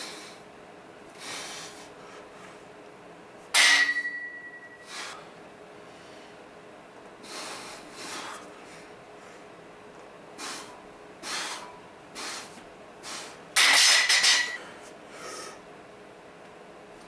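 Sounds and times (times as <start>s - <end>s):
heavy breathing: 7.2s - 9.5s, 10.4s - 13.4s.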